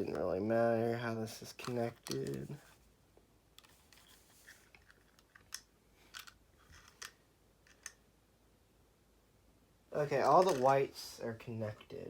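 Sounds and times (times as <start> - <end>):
wires clicking and scraping: 1.3 - 2.8, 3.6 - 8.0, 10.0 - 11.1.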